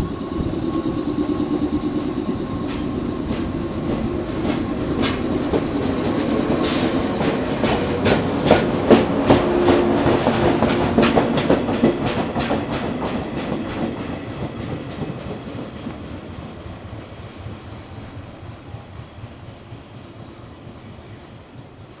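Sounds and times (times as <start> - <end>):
electric train pulling away: 0.0 - 22.0
train wheel banging: 2.6 - 15.7.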